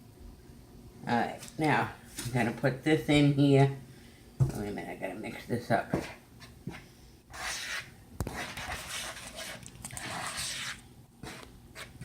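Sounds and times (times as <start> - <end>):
utensil stirring flour in bowl: 5.8 - 12.0.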